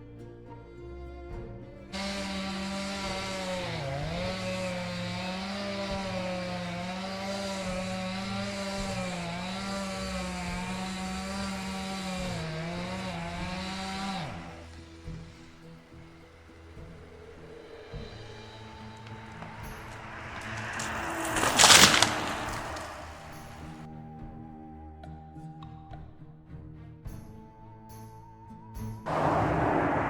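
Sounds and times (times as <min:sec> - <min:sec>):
chainsaw cutting wood: 0:02.0 - 0:23.9.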